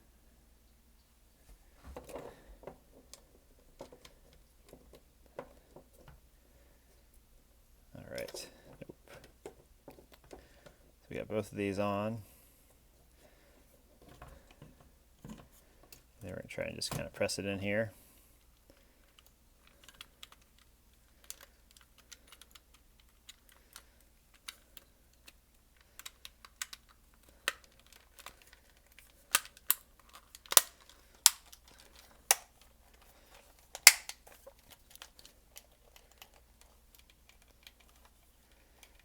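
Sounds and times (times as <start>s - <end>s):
plastic controller trigger clicks: 33.8s - 34.2s.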